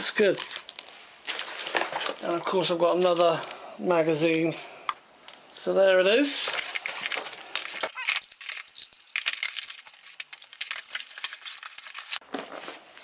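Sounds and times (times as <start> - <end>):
cardboard packaging handled: 6.4 - 12.2.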